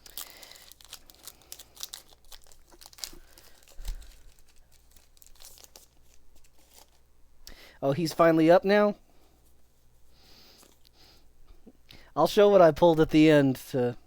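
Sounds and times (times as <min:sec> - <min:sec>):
foil wrapper crinkling and tearing: 0:00.0 - 0:07.1.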